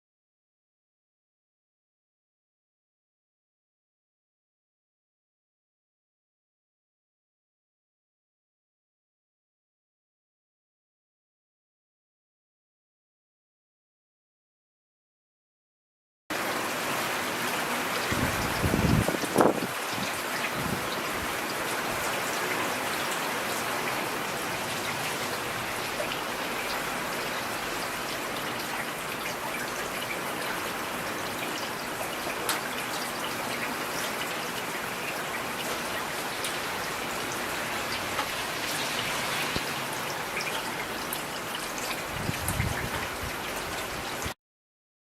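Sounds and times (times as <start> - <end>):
steady rain falling: 16.3 - 44.4.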